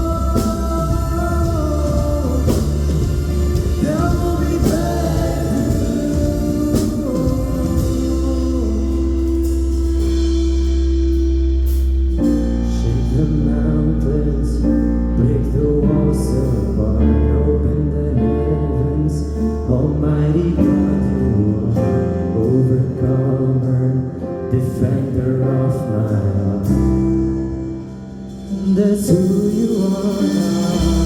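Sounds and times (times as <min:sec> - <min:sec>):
voices singing: 0:00.0 - 0:09.6
drum and cymbal hits: 0:00.0 - 0:13.6, 0:26.6 - 0:31.0
worship band playing: 0:00.0 - 0:31.0.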